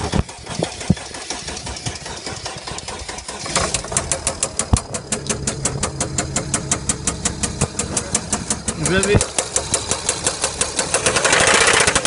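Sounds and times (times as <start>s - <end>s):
diesel engine running rough: 0.0s - 12.0s
engine clunk: 0.0s - 12.0s
regular engine knock: 0.0s - 12.0s.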